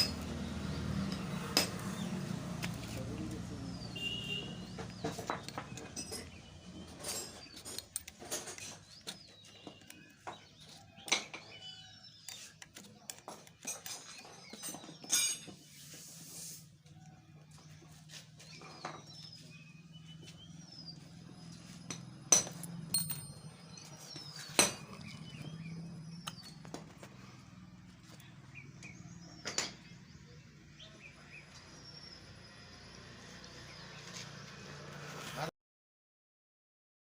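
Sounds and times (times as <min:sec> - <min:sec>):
birds chirping: 0:00.0 - 0:35.4
metallic clinks and knocks: 0:05.0 - 0:09.3, 0:21.8 - 0:25.1.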